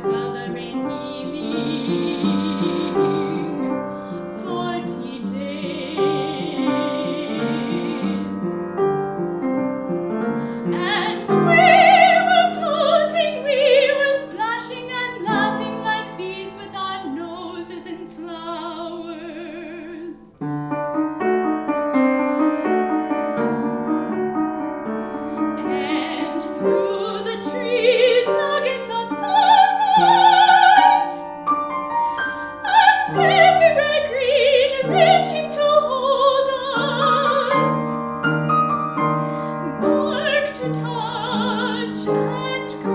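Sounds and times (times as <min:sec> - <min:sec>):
woman singing operatically: 0:00.0 - 0:08.6, 0:10.7 - 0:20.3, 0:25.6 - 0:31.3, 0:32.3 - 0:38.0, 0:39.6 - 0:42.9
piano accompaniment: 0:00.0 - 0:42.9.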